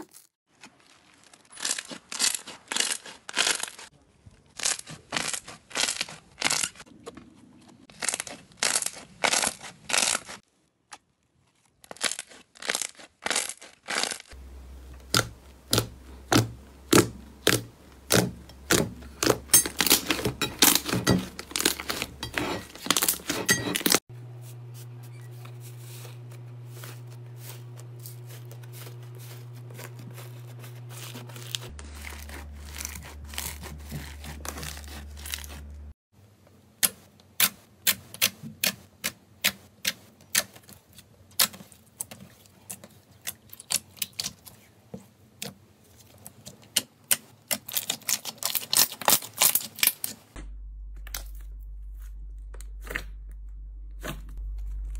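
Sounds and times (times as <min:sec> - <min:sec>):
slime crackling and popping: 0:07.9 - 0:10.4
steady low hum: 0:14.4 - 0:35.9, 0:50.4 - 0:54.9.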